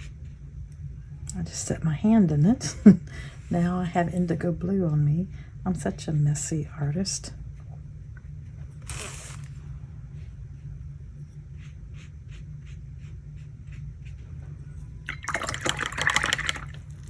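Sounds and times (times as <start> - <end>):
steady low hum: 0.0 - 17.0
paint splashing trickle: 15.0 - 17.0.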